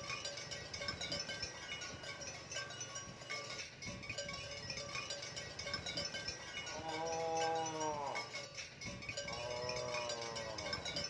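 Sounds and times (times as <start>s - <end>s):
background music with chiming melody: 0.0s - 11.0s
cow mooing: 6.7s - 8.3s, 9.3s - 10.9s.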